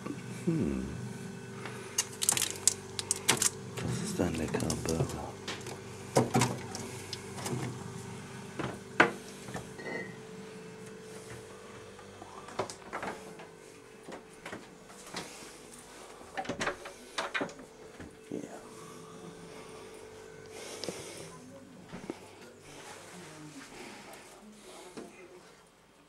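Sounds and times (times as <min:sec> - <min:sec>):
faint steady hum: 0:00.0 - 0:26.0.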